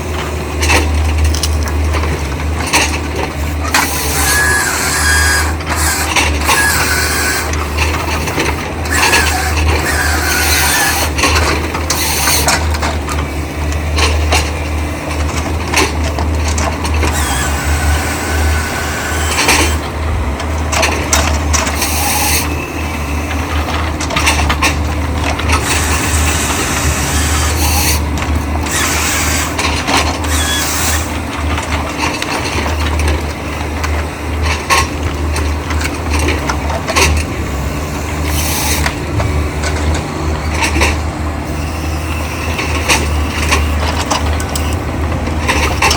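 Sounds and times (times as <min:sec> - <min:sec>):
excavator engine running: 0:00.0 - 0:45.9
noisy machine work bursts: 0:02.8 - 0:13.6, 0:16.9 - 0:24.5, 0:25.2 - 0:31.7, 0:35.8 - 0:45.9.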